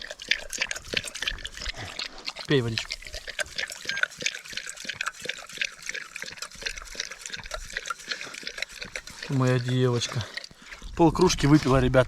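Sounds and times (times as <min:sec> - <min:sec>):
dog lapping water: 0:00.0 - 0:12.0.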